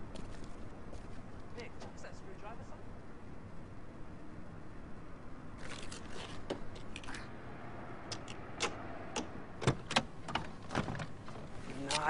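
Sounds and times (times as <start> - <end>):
sharp clicks and knocks: 8.1 - 12.0.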